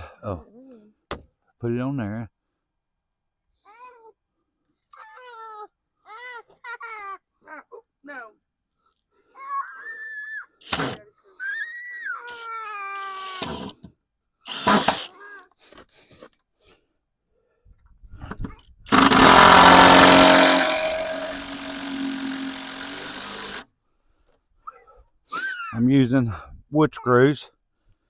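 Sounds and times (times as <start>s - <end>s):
power drill driving screw into wood: 10.6s - 11.0s, 13.2s - 13.9s, 14.5s - 15.1s, 18.9s - 23.6s.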